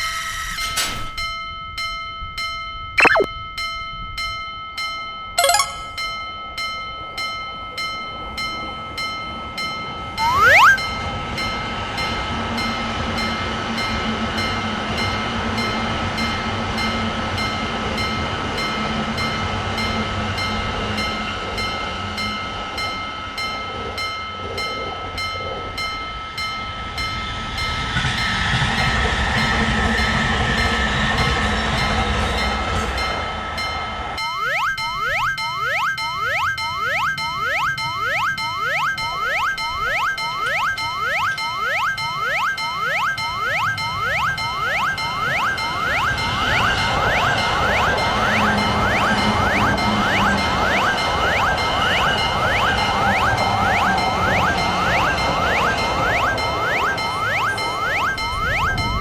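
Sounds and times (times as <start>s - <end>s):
railroad crossing bell ringing: 1.2s - 59.0s
loud rising tone: 10.2s - 10.8s
train rumbling past: 45.6s - 59.0s.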